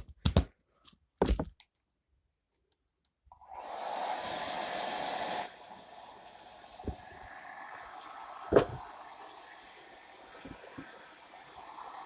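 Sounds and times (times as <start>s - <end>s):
hair dryer blowing: 3.4s - 12.0s.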